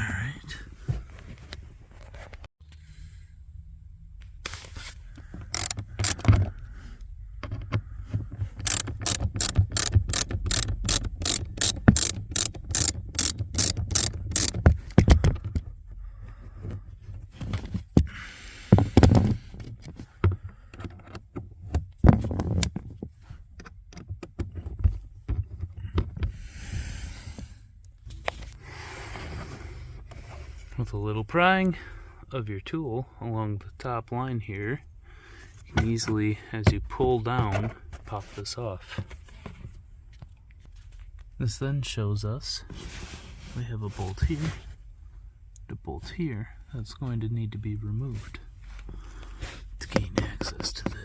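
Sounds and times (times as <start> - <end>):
hand ratchet clicking: 5.5 - 6.3, 8.6 - 14.7
tools and plastic clattering: 18.8 - 26.3.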